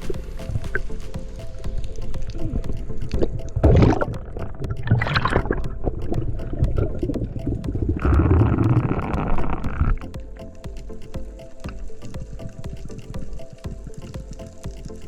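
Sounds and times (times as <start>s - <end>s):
faint crackling clicks: 0.0s - 15.0s
water gurgling and bubbling: 1.7s - 10.6s.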